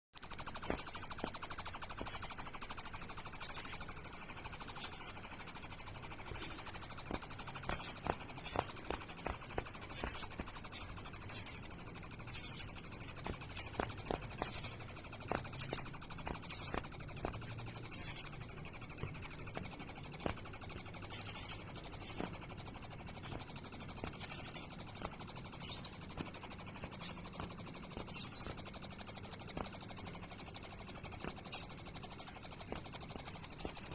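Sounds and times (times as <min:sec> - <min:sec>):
bird singing rapid high trill: 0:04.6 - 0:28.9.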